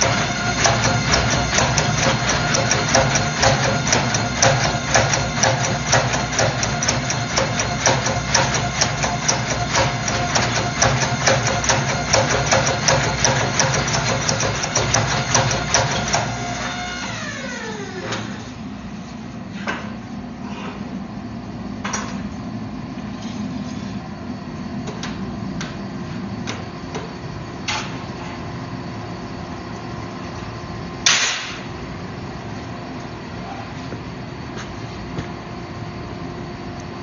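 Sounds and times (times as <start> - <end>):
electric machine whining and ticking: 0.0 - 18.3
machine winding down: 0.0 - 18.5.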